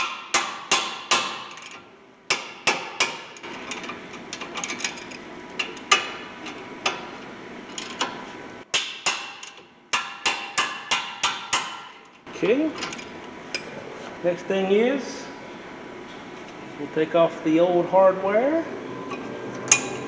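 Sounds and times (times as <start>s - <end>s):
hammer tapping on steel: 8.8s - 12.1s.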